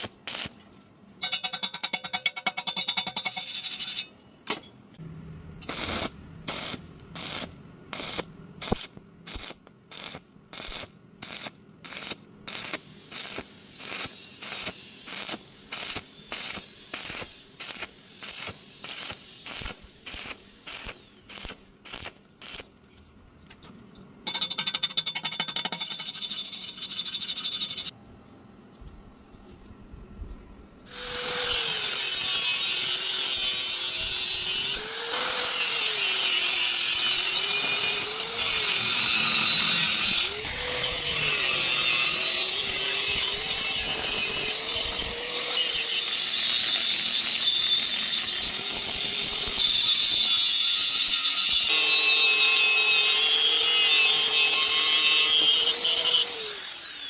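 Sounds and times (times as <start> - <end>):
hand tool scraping metal: 1.2 - 4.6, 24.3 - 27.9.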